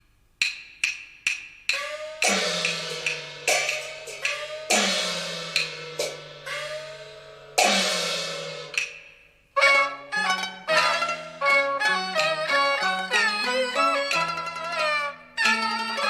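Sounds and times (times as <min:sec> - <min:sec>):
cymbal strikes: 0:01.7 - 0:09.4
bowed fiddle melody: 0:09.6 - 0:16.0.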